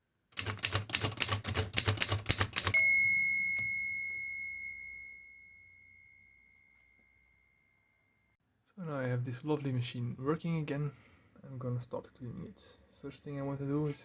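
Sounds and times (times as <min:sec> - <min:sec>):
typewriter keys striking: 0:00.4 - 0:02.8
typewriter margin bell ringing: 0:00.4 - 0:06.2.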